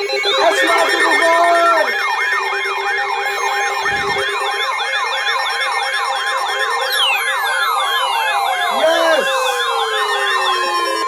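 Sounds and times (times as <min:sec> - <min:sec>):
wavering high siren tone: 0:00.0 - 0:11.0
yelping electronic siren: 0:00.2 - 0:04.5, 0:06.9 - 0:11.0
siren tone falling in pitch: 0:06.9 - 0:11.0.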